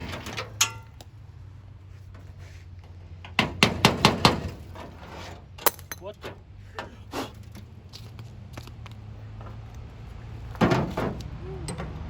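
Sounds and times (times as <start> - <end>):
sharp metal knocks: 3.3 - 4.8
ringing metal clink: 5.6 - 6.2.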